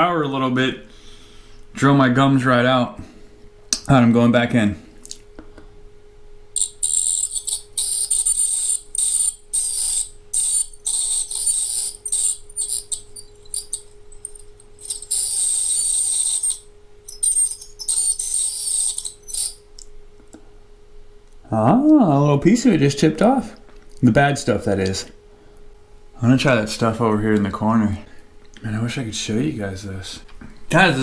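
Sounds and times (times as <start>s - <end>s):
dental scaler buzzing: 6.5s - 19.7s.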